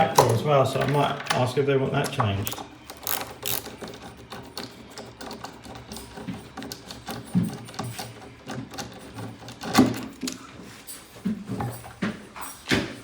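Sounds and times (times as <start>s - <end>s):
screwdriver clicking and scraping metal: 2.0s - 10.5s.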